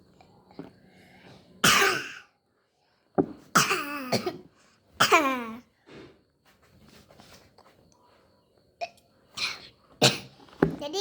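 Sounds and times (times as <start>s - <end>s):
child coughing: 1.6s - 2.2s, 3.6s - 5.6s, 8.8s - 10.4s.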